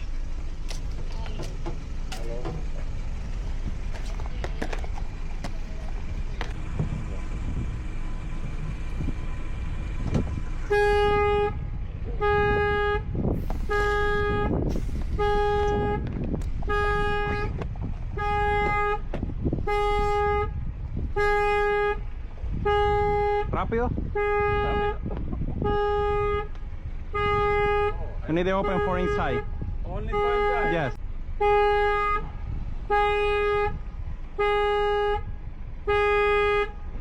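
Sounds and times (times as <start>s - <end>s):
car alarm horn blasts: 10.6s - 37.0s.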